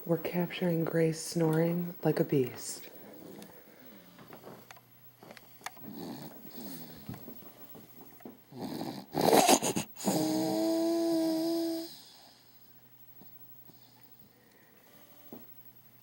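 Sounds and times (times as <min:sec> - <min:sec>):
baby snorting: 0:05.2 - 0:07.2, 0:08.5 - 0:12.4.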